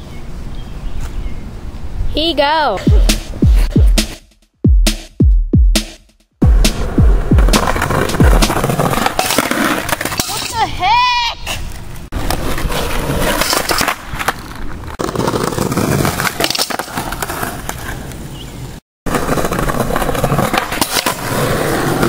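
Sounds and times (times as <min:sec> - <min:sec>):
skateboard wheels rolling on pavement: 0:06.4 - 0:22.0
skateboard clacks and knocks: 0:06.6 - 0:10.4, 0:19.1 - 0:22.0.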